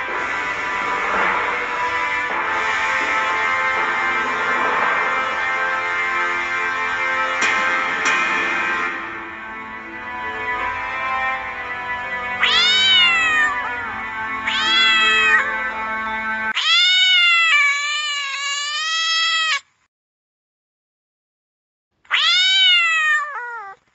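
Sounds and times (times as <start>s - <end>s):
background music: 0.0s - 16.9s
cat meowing: 12.4s - 13.8s, 14.4s - 15.5s, 16.6s - 19.7s, 22.1s - 23.8s
cat yowling: 12.4s - 13.8s, 14.4s - 15.5s, 16.6s - 19.7s, 22.1s - 23.8s.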